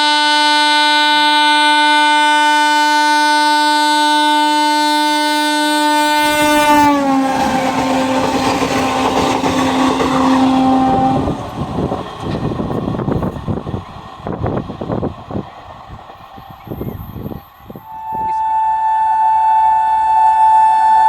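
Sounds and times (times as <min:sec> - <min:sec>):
train horn blast: 0:00.0 - 0:11.6, 0:17.8 - 0:21.0
train wheels clattering: 0:06.4 - 0:17.4.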